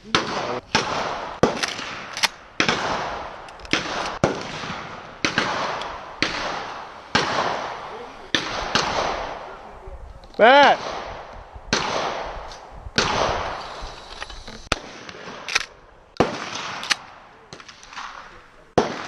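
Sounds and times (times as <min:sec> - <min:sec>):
gunshots echoing: 0:00.0 - 0:09.8, 0:10.5 - 0:13.6, 0:14.7 - 0:19.0.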